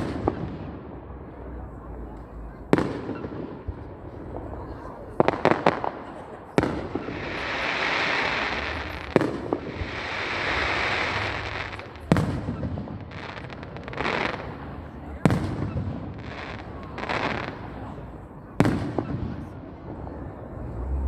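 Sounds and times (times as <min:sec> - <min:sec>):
firework hiss: 0:06.6 - 0:18.1.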